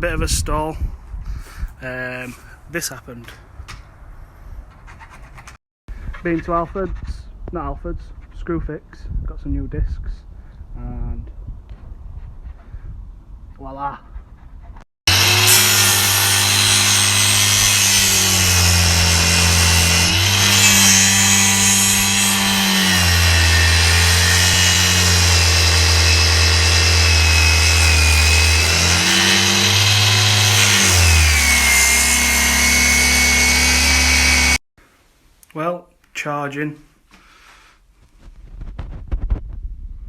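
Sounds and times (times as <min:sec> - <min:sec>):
angle grinder cutting plastic: 0:15.1 - 0:34.6.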